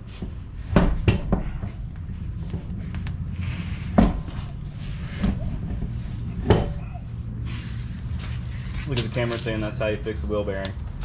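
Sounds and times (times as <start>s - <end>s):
steady low hum: 0.0s - 11.0s
sharp knocks and clunks: 0.7s - 1.8s.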